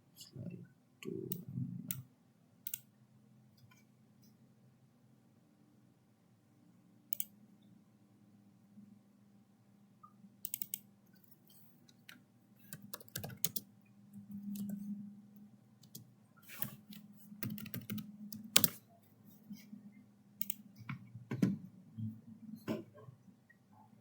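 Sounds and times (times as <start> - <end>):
computer keyboard typing: 10.4 - 10.8, 12.0 - 13.7, 14.3 - 14.8, 15.8 - 18.8.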